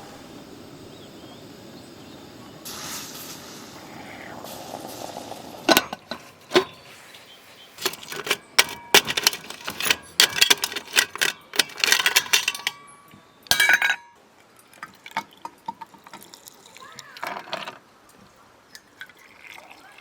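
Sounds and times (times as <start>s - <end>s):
kitchenware clinking and clattering: 5.7s - 6.8s, 7.8s - 14.2s, 17.2s - 17.8s.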